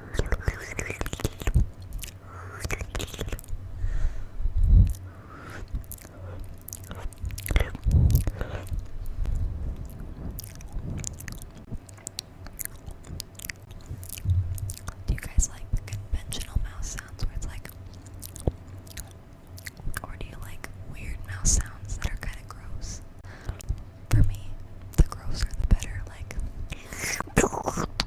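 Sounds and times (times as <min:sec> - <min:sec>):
wet mouth clicks and smacks: 0:00.1 - 0:03.6, 0:04.8 - 0:09.0, 0:09.8 - 0:20.6, 0:23.4 - 0:28.0
low thump: 0:14.2 - 0:14.8.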